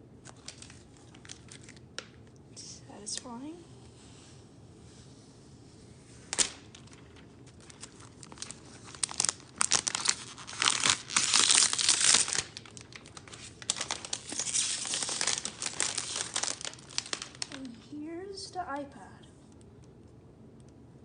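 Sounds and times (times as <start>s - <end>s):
packaging wrap crinkling: 0.2s - 2.4s, 6.2s - 17.8s.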